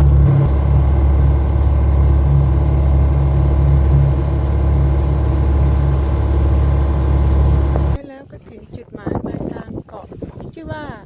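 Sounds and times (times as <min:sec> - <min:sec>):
motorboat engine running: 0:00.0 - 0:08.0.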